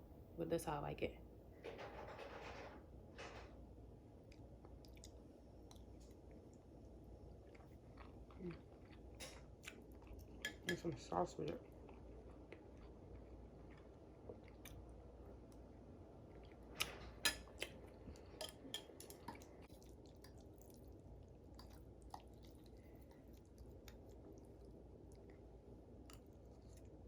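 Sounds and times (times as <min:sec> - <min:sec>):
person chewing noodles: 0:04.3 - 0:10.5, 0:11.6 - 0:27.0.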